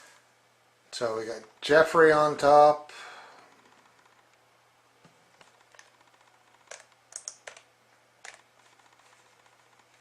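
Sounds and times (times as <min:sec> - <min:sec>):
light clicks and taps at a computer: 0:05.0 - 0:10.0.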